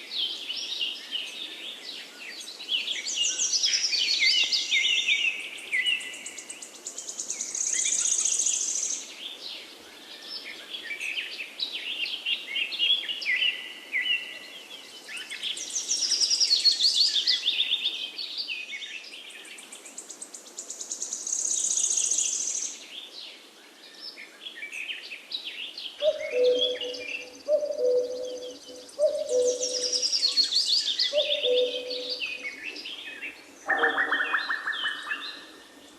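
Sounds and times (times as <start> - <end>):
songbirds chirping and whistling: 0.2 - 35.9
high trilled bird song: 26.0 - 35.5.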